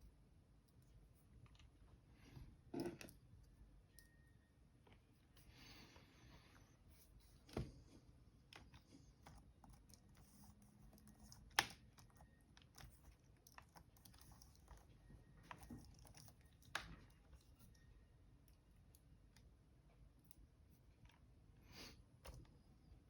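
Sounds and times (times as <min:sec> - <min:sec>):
plastic clicks and taps on laptop: 0:10.8 - 0:14.7.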